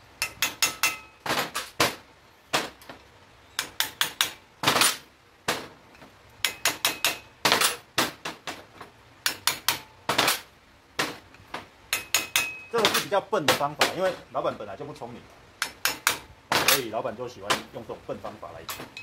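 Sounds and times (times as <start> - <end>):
hammer striking steel: 0.2 - 2.0, 3.6 - 5.7, 6.4 - 8.2, 9.2 - 11.2, 11.9 - 14.0, 15.6 - 16.9.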